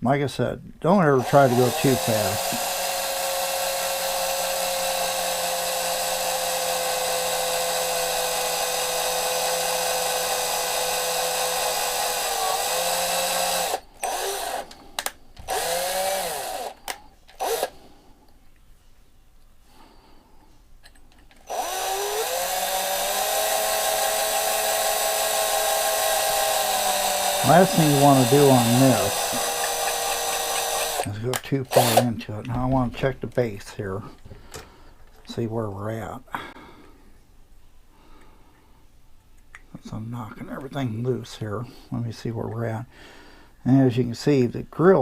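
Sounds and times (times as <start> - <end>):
electric drill boring: 1.2 - 17.8, 21.4 - 31.1, 31.7 - 32.1.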